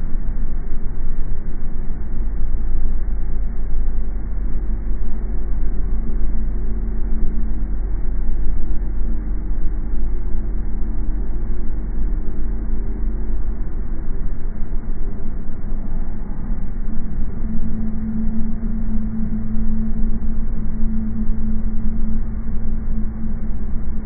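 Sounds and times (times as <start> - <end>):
faint droning hum: 0.0 - 24.0.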